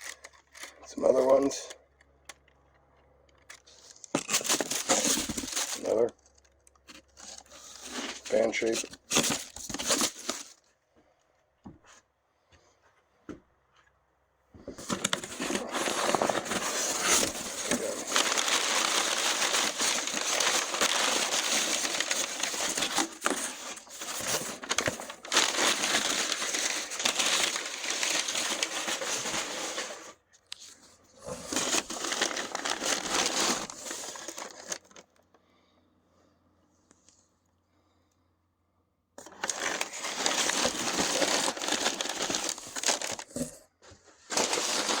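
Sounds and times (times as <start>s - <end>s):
packaging crinkling and rustling: 3.4s - 10.7s, 14.7s - 35.2s, 39.2s - 43.5s, 44.2s - 45.0s.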